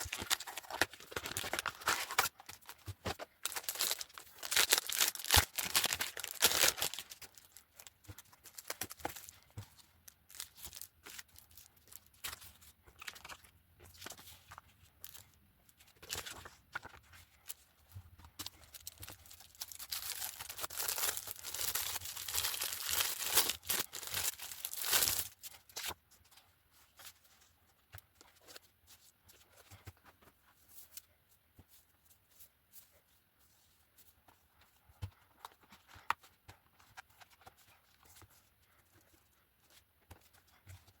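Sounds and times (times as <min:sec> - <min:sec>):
packaging torn and crinkled: 0:00.0 - 0:02.7, 0:03.4 - 0:07.6, 0:18.7 - 0:25.4.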